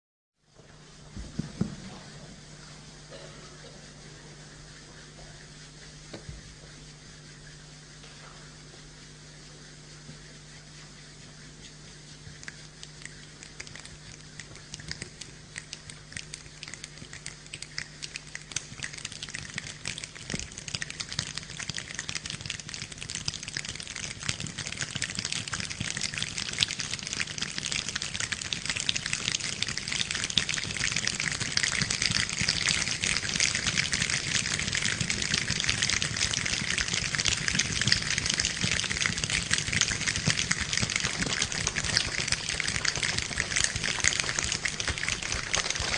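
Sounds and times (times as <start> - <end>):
people imitating rain with taps: 12.6 - 45.9.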